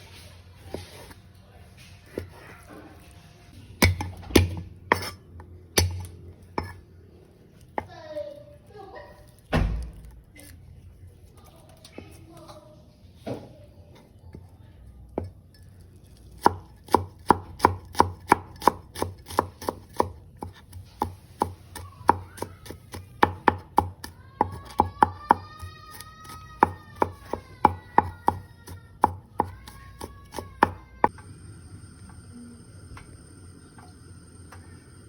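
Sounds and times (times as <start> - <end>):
knife chopping on cutting board: 16.4 - 23.9.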